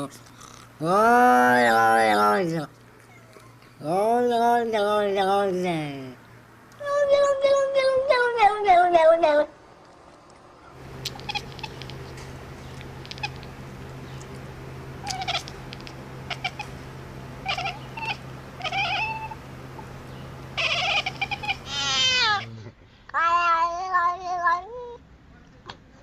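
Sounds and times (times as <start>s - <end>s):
cat meowing: 11.1s - 11.9s, 15.0s - 15.5s, 17.4s - 19.4s, 20.6s - 22.5s.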